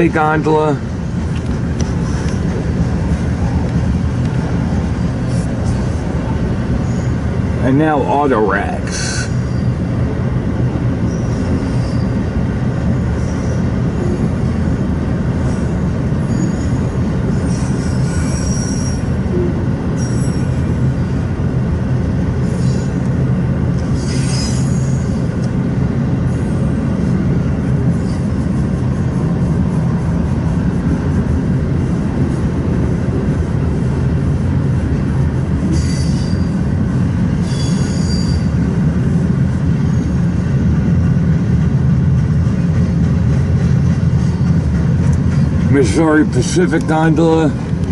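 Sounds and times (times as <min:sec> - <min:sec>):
train wheels rumbling on rail: 0:00.0 - 0:47.9
high-pitched wheel squeals: 0:06.8 - 0:07.2, 0:08.9 - 0:09.8, 0:11.1 - 0:12.2, 0:13.0 - 0:14.8, 0:15.4 - 0:20.8, 0:22.4 - 0:23.1, 0:23.8 - 0:25.3, 0:27.9 - 0:28.6, 0:35.6 - 0:36.7, 0:37.3 - 0:38.6, 0:39.8 - 0:40.2.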